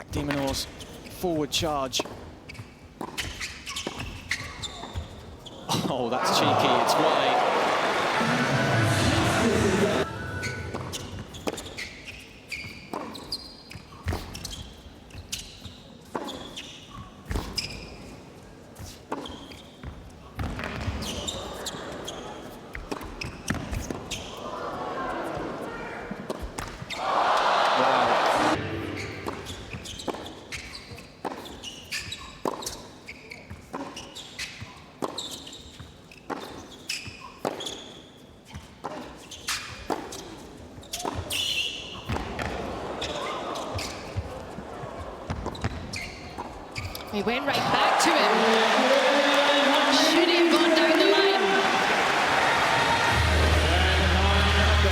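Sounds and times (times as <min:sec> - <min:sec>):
shoes squeaking on court: 0:00.0 - 0:01.2, 0:02.0 - 0:06.0, 0:10.2 - 0:24.4, 0:28.9 - 0:50.3.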